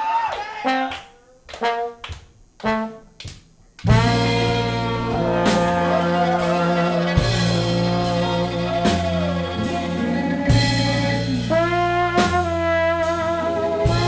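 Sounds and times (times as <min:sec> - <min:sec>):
horn stabs: 0:00.4 - 0:03.2, 0:03.9 - 0:14.0
live band playing loudly: 0:03.9 - 0:14.0.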